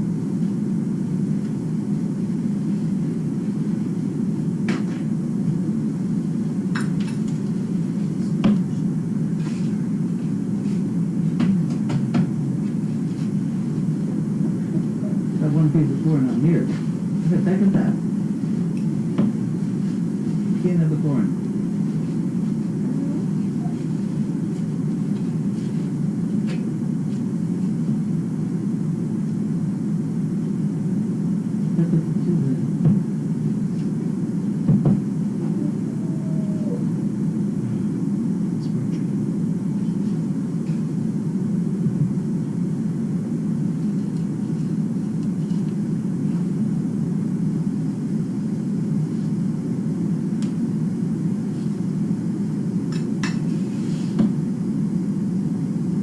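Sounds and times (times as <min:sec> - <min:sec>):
low rumbling noise: 0:28.3 - 0:39.8.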